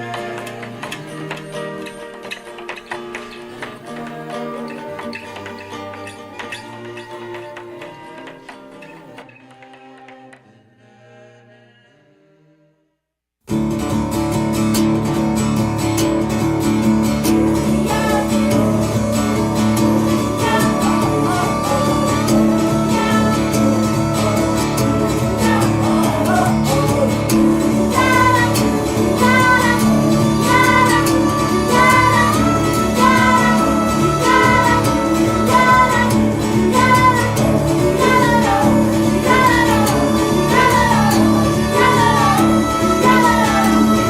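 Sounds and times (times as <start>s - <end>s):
song with acoustic guitar and singing: 0.0s - 12.1s, 13.5s - 44.0s.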